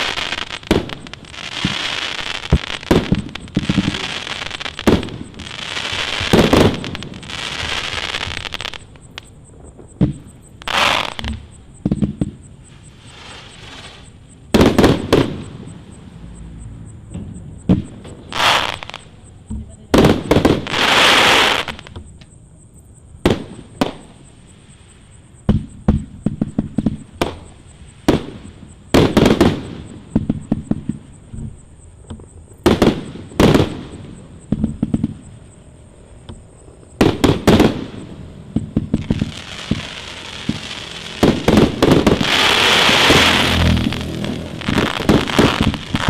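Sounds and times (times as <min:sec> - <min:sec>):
firework bangs: 0:00.0 - 0:16.1, 0:17.1 - 0:22.1, 0:23.2 - 0:24.8, 0:25.4 - 0:31.6, 0:32.2 - 0:35.4, 0:36.2 - 0:46.0
hissing crackle: 0:00.0 - 0:16.5, 0:20.0 - 0:22.3, 0:23.2 - 0:46.0
rapid crackling pops: 0:36.9 - 0:46.0.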